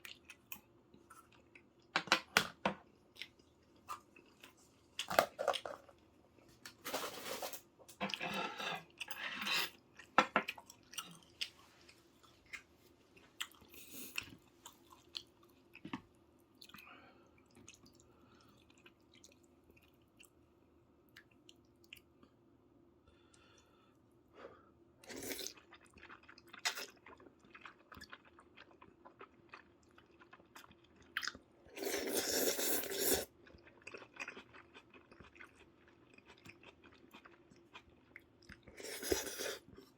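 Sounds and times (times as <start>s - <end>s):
person chewing food: 8.0s - 15.9s, 25.1s - 39.9s.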